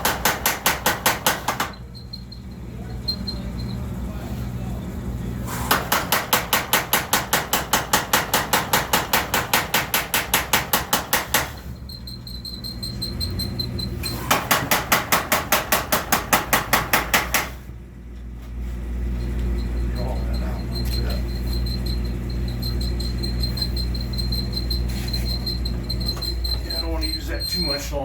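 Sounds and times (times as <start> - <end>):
power hammer pounding steel: 0.0 - 1.8, 5.6 - 11.7, 14.2 - 17.7
low hum of hammer drive: 5.5 - 27.6.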